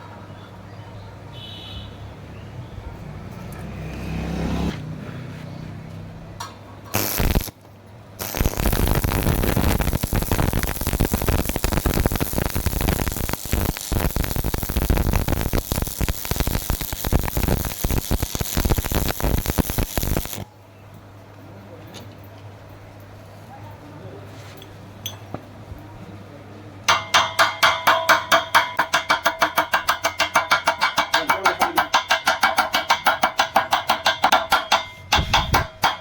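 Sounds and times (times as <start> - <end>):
welding arc crackling: 6.9 - 20.5.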